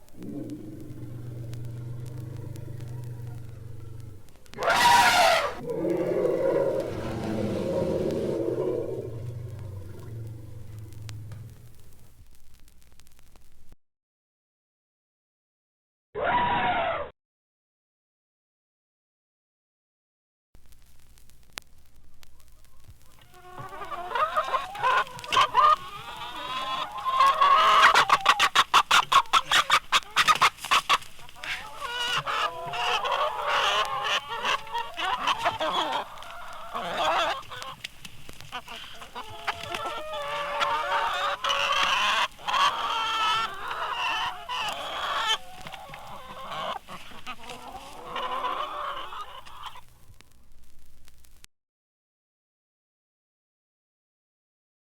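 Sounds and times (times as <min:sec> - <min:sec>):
chickens clucking and cackling: 0:00.2 - 0:11.7, 0:22.3 - 0:50.0.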